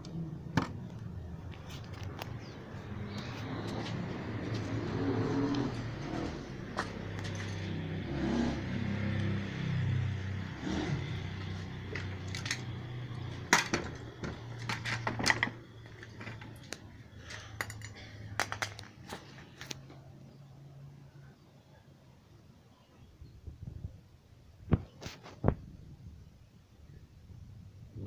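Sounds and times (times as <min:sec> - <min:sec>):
light metallic clicks and clinks: 0:14.6 - 0:19.8.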